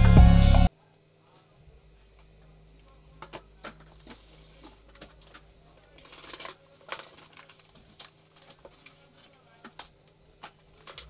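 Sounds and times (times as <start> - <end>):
packaging clicks and scrapes: 3.0 - 11.0
rustling scrape: 3.0 - 11.0.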